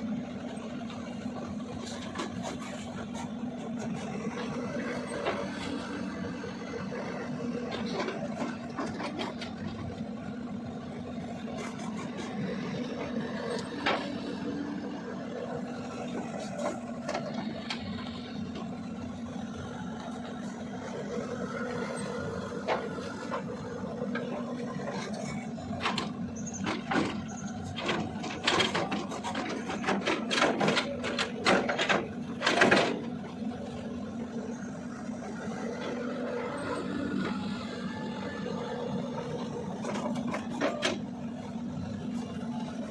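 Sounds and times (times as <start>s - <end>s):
excavator diesel engine running: 0.0s - 42.9s
knocks and clanks: 24.2s - 33.2s.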